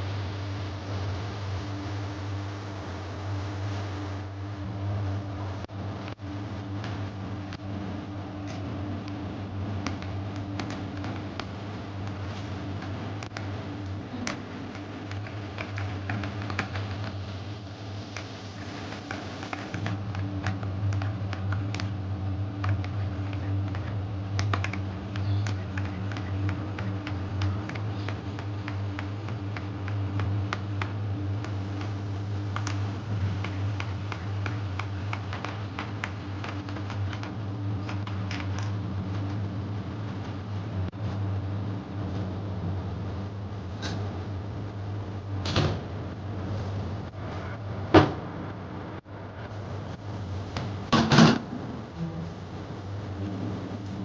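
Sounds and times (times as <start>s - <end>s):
steady low hum: 0.0s - 54.0s
sharp clicks and taps: 9.8s - 17.3s, 18.1s - 39.4s.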